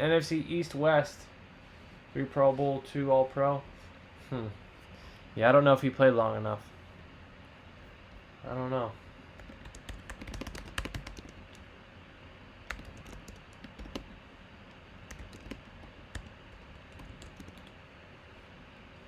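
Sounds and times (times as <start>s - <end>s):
computer keyboard typing: 9.4s - 11.6s, 12.6s - 14.2s, 15.0s - 17.8s.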